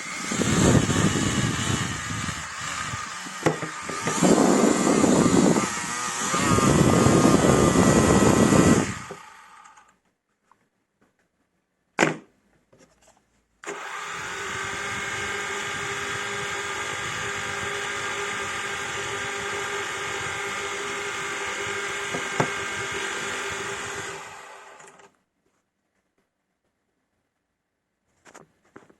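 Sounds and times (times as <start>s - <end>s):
drone propellers whirring: 0.0s - 9.9s, 13.7s - 25.0s.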